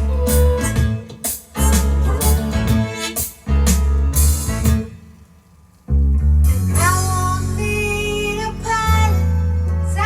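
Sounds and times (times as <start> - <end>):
song playing from a record: 0.0 - 5.0, 6.4 - 10.0.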